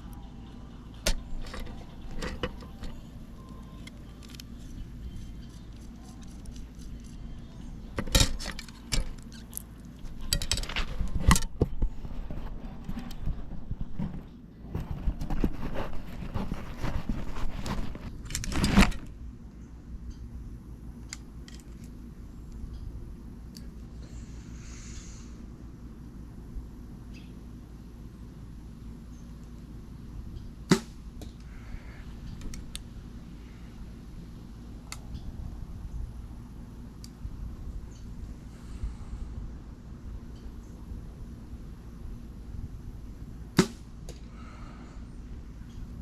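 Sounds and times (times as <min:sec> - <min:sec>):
metal arrows knocking and clinking: 0:00.9 - 0:11.6.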